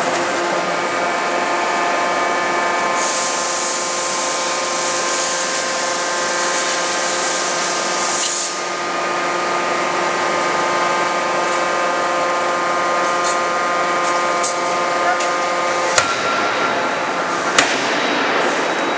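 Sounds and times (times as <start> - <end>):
forge machinery hum: 0.0 - 18.9
hiss: 3.0 - 5.6.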